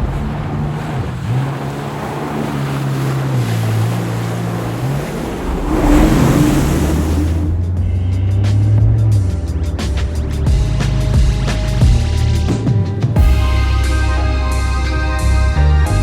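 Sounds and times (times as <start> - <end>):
water rushing: 0.0 - 7.8
wind buffeting microphone: 0.0 - 8.0
jet ski engine drone: 0.0 - 16.0.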